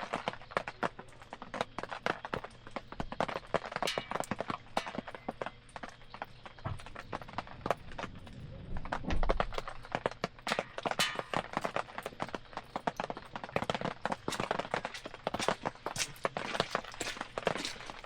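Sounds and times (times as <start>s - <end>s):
campfire crackling and popping: 0.0s - 18.0s
low rumble: 6.7s - 10.2s.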